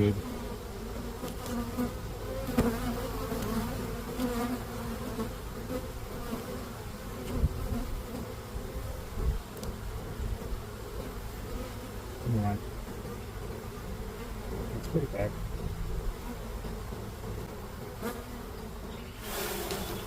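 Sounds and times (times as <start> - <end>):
honeybees buzzing: 0.0 - 20.0
low bumps: 12.6 - 20.0.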